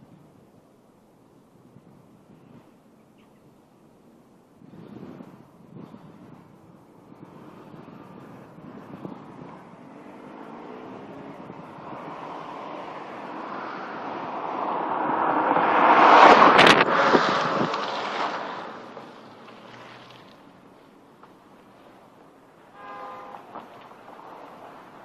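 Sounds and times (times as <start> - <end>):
car driving past: 9.0 - 20.6.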